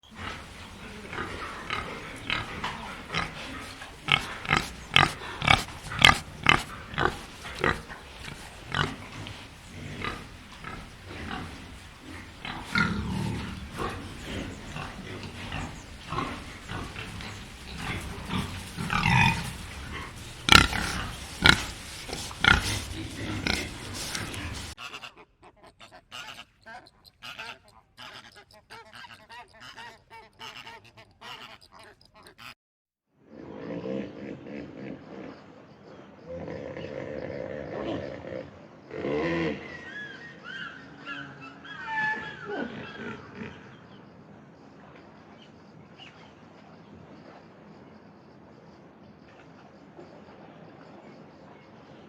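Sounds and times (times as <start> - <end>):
animal short calls: 0.1 - 32.5.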